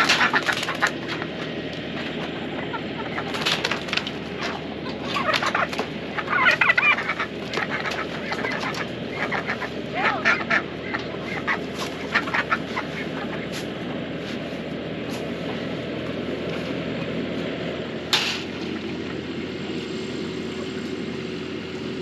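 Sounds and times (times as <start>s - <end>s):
chickens clucking: 0.0s - 22.0s.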